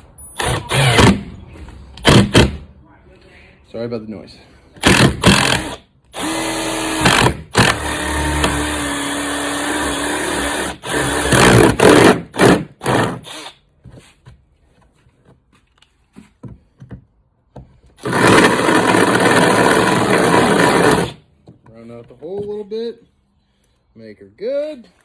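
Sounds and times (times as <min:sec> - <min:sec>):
power drill boring through plastic: 0:00.4 - 0:01.2, 0:04.8 - 0:13.6, 0:18.0 - 0:21.2.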